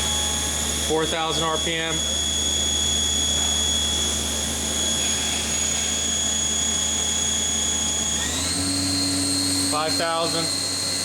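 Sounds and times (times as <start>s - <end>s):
machine spindle whine: 0.0s - 11.0s.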